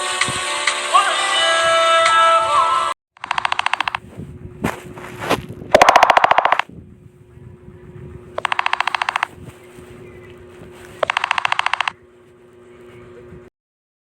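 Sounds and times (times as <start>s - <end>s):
phone ringtone trills: 3.2s - 4.0s, 5.8s - 6.6s, 8.4s - 9.4s, 11.0s - 12.0s.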